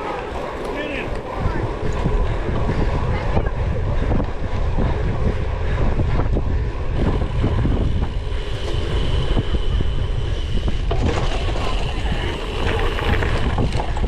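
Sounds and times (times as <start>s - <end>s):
steady low rumble: 0.0s - 14.0s
wind buffeting microphone: 0.0s - 14.0s
bike rattles and knocks: 10.8s - 14.0s.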